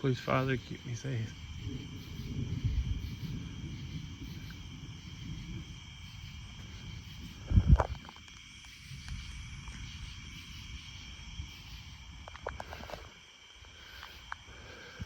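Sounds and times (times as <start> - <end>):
sharp thunder crackles: 0.0 - 8.1
thunder rumbling: 0.0 - 8.2
night insects chirping: 0.0 - 15.0.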